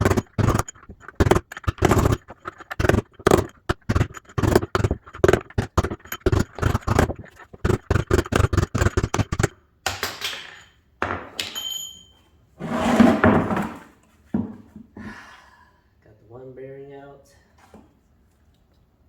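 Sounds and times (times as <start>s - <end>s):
metal scraping clatter: 0.0s - 9.5s
rapid hammer blows: 0.0s - 9.6s.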